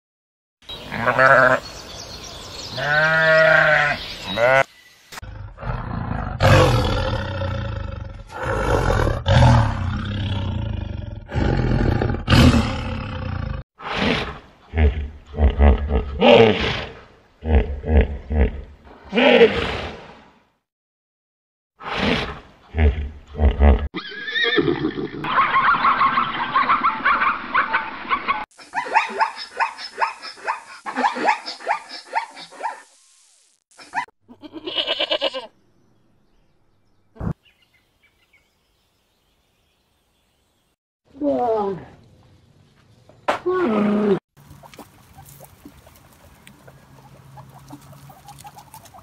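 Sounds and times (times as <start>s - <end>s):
big cat roaring: 5.2s - 19.9s.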